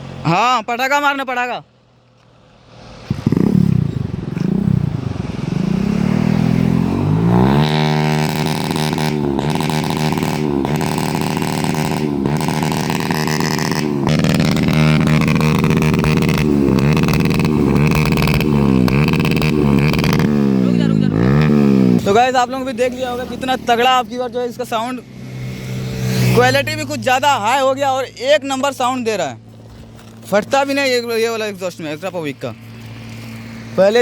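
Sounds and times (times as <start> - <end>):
motorcycle engine revving: 2.4 - 34.0
exhaust pops and crackles: 8.2 - 20.7, 28.7 - 33.9.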